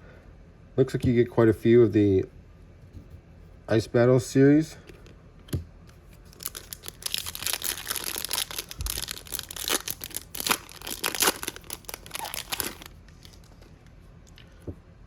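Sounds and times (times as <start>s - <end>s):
foil wrapper crinkling and tearing: 6.2s - 13.6s.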